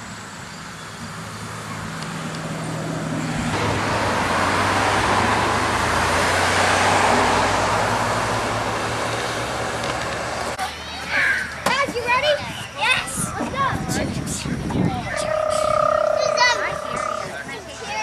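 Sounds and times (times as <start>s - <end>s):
rushing noise: 1.2s - 10.6s.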